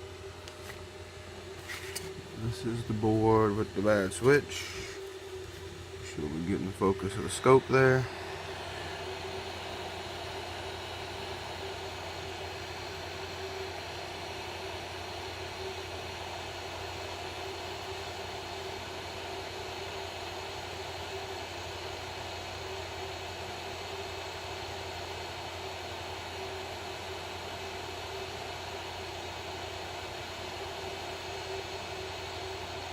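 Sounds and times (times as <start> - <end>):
low steady hum: 0.0 - 16.8
hot air blower rushing: 1.6 - 16.2.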